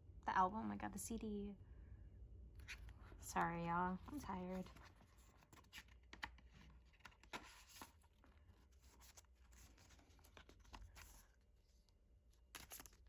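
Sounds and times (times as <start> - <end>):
paper and plastic rustling: 4.0 - 11.4, 12.4 - 13.0.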